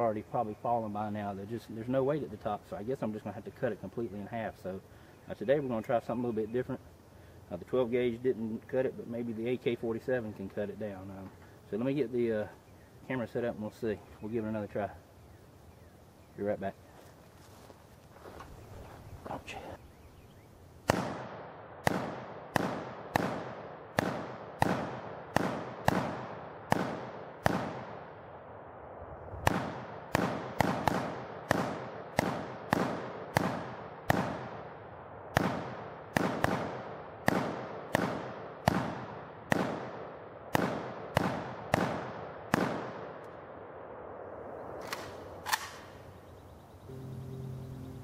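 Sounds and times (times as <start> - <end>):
rifle single shots ringing: 20.8 - 28.4, 29.4 - 46.2.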